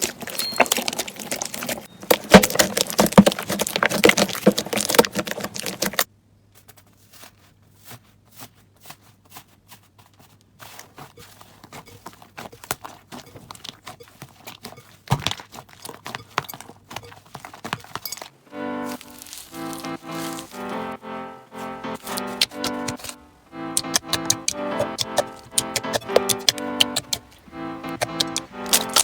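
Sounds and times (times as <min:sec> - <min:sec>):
slime crackling and popping: 0:00.0 - 0:06.1, 0:18.8 - 0:21.0, 0:21.9 - 0:29.0.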